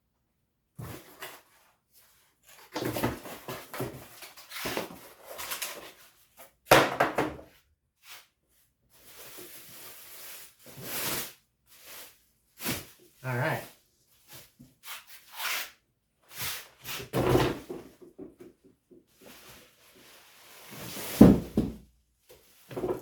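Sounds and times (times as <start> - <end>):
cardboard and packing rustling: 0.8 - 6.5, 16.4 - 23.0.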